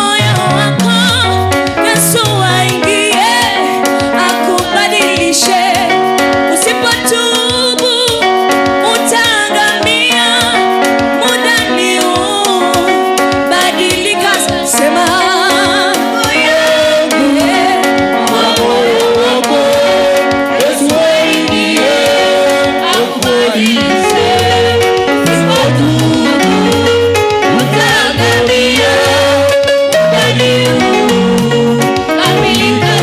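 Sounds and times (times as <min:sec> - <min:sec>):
keyboard accompaniment: 0:00.0 - 0:33.0
voices singing with vibrato: 0:08.2 - 0:33.0.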